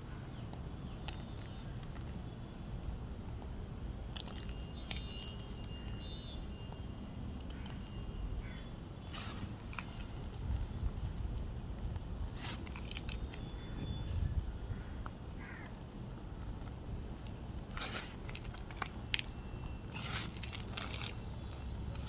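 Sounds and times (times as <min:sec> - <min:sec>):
chalk crunching: 0:00.0 - 0:05.9, 0:07.3 - 0:11.4, 0:12.2 - 0:13.8, 0:15.4 - 0:22.0
steady low rumble: 0:00.0 - 0:22.0.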